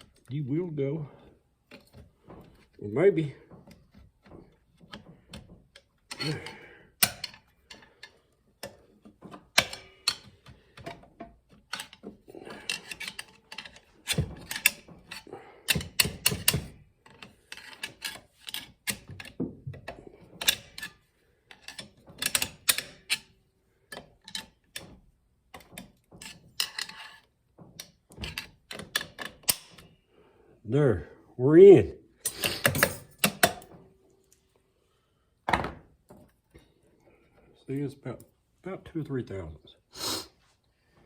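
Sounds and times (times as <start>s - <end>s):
metallic clicking and clattering: 3.6s - 25.0s.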